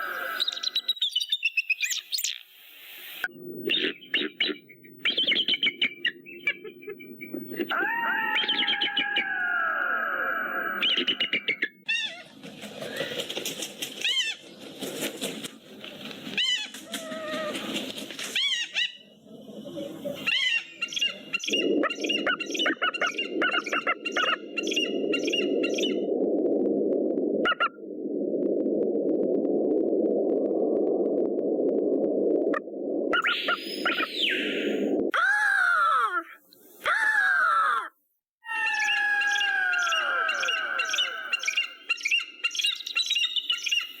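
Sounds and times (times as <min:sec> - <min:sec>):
falling whistled bird cry: 0:00.0 - 0:02.3, 0:07.6 - 0:12.2, 0:33.2 - 0:36.1, 0:38.5 - 0:44.0
bird of prey screaming: 0:07.7 - 0:11.2, 0:35.2 - 0:41.9.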